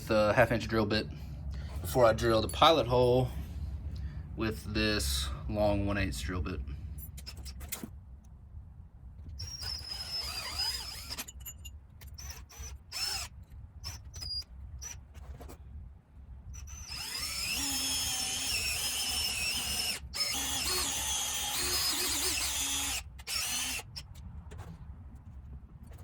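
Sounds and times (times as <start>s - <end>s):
power drill boring into wood: 9.4s - 15.0s, 16.6s - 24.1s.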